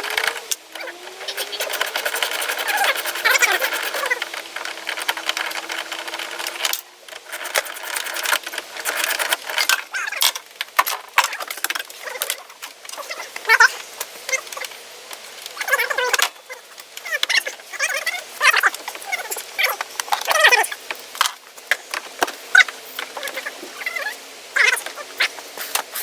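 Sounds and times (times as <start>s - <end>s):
small power tool motor clicking: 0.0s - 9.7s
parts clicking and rattling: 0.0s - 17.6s.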